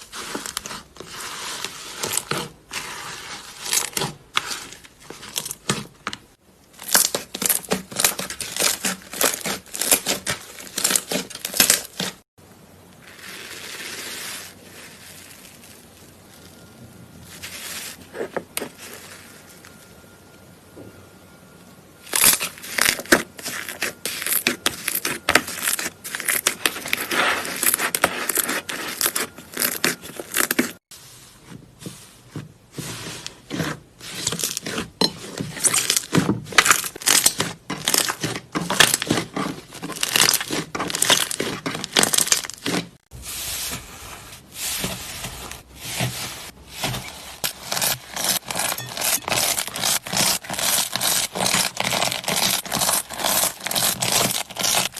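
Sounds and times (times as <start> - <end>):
slime crackling and popping: 47.4 - 54.9.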